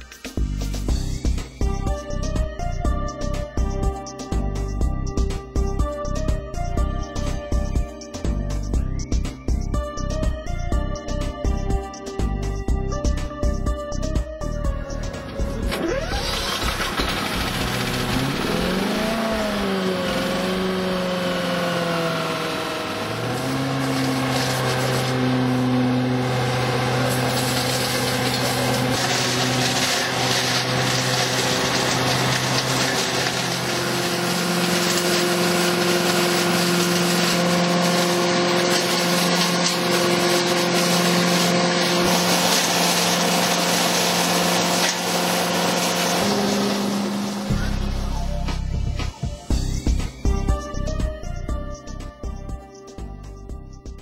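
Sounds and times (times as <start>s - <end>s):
leaf vacuum engine running: 14.9s - 50.9s
suction fan air rushing: 16.2s - 47.9s.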